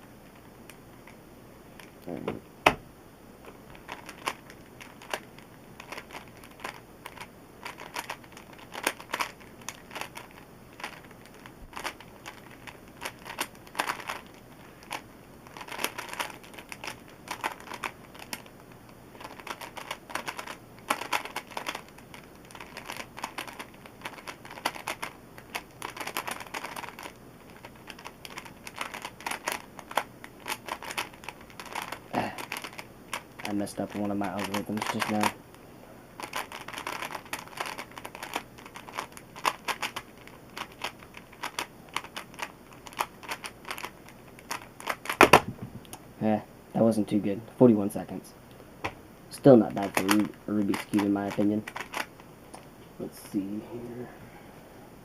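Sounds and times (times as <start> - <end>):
puzzle cube clicking: 3.9 - 18.5, 19.2 - 35.4, 36.2 - 46.0, 49.8 - 52.2.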